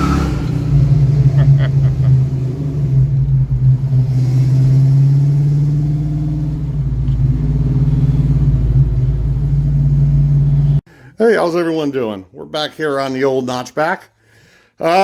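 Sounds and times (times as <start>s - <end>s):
car engine running: 0.0s - 10.8s.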